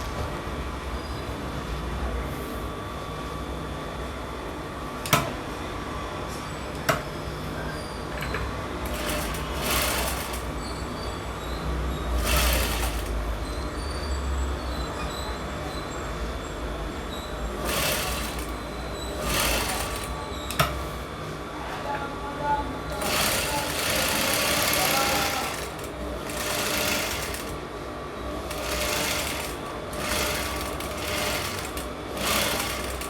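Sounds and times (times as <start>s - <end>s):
sewing machine humming: 8.8s - 10.6s, 12.2s - 13.4s, 17.5s - 20.3s, 22.9s - 33.0s.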